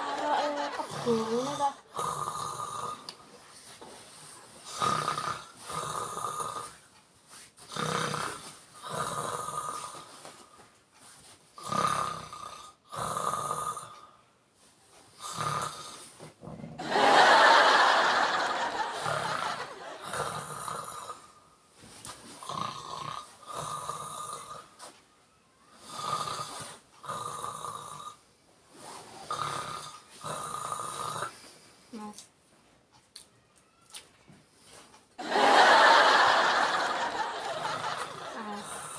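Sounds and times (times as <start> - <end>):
man snoring: 0.0 - 3.1, 4.6 - 6.9, 7.7 - 10.1, 11.6 - 14.2, 15.2 - 21.4, 22.4 - 24.8, 25.7 - 28.2, 29.2 - 31.4, 35.8 - 38.9.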